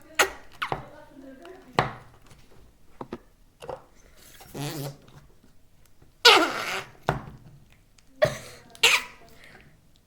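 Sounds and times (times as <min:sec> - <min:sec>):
slime squeezed fart-like blasts: 0:04.5 - 0:05.0, 0:06.3 - 0:07.0.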